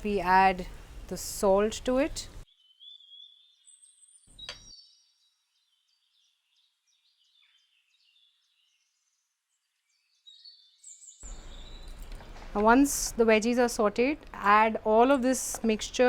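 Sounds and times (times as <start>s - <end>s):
faint birdsong chirps: 2.4s - 12.5s.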